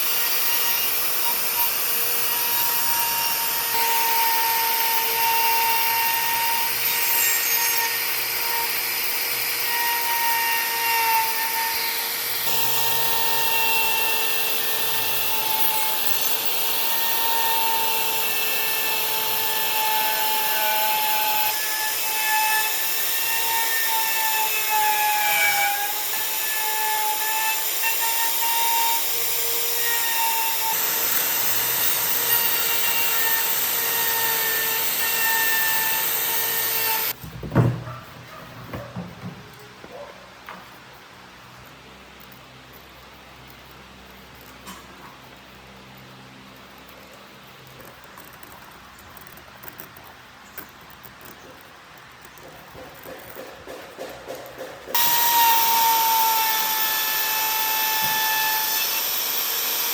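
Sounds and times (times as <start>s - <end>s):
power tool cutting wood: 0.0s - 37.2s, 52.3s - 59.9s.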